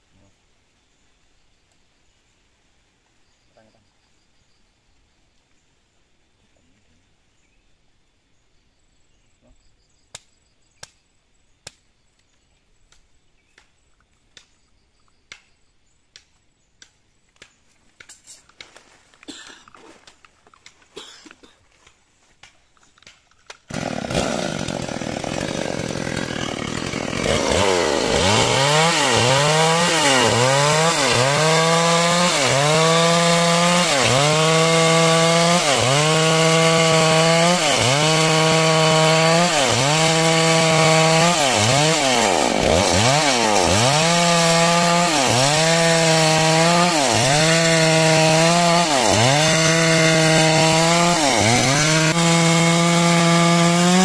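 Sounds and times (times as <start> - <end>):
chainsaw cutting timber: 19.2 - 19.6, 20.6 - 21.5, 22.8 - 54.0.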